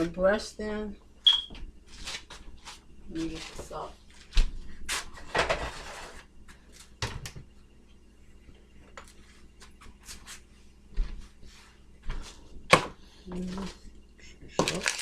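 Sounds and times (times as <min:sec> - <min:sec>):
rustling or scraping: 0:01.9 - 0:07.0.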